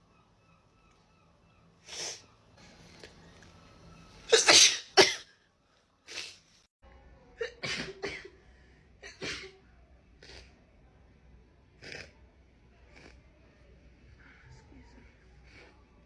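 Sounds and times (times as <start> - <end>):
woman sneezing: 4.3 - 5.2.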